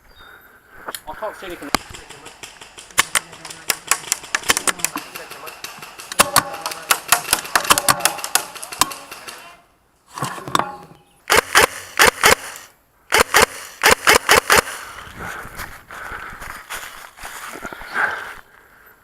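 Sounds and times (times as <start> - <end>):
airsoft guns firing: 1.6 - 9.6, 11.3 - 14.9.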